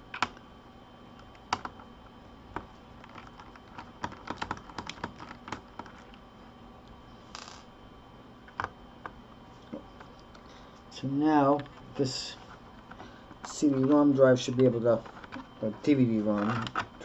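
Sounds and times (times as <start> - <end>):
plastic parts clicking: 16.4 - 16.9.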